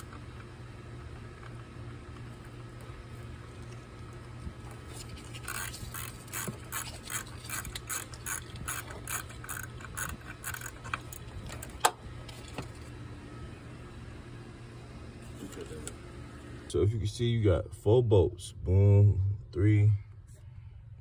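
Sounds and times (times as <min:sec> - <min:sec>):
ratchet wrench clicking: 0:05.4 - 0:11.6.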